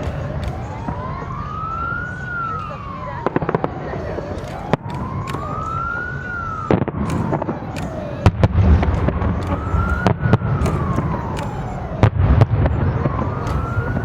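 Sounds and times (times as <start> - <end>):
fireworks banging: 0.0 - 14.0
siren wailing: 0.0 - 14.0.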